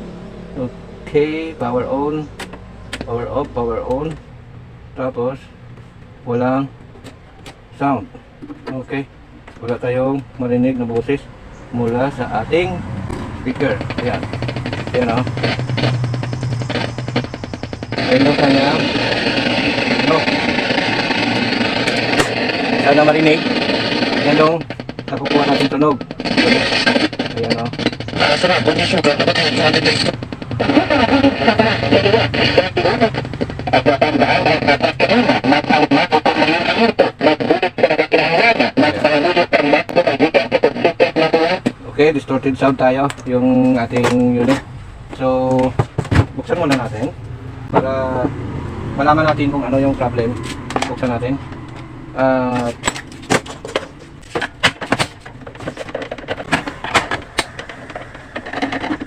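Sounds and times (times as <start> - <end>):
distorted guitar music from radio: 0.0 - 59.0
plastic casing clicks and knocks: 45.5 - 47.1, 52.5 - 59.0.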